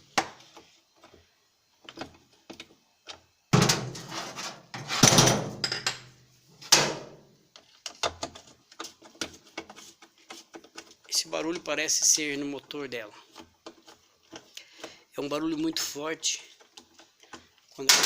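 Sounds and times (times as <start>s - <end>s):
scraping and rattling: 3.6s - 5.4s.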